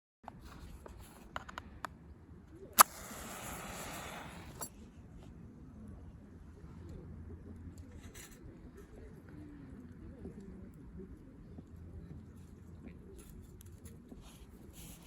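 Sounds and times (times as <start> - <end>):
fire starter hissing: 2.8 - 4.7
match striking scrape: 2.8 - 4.7.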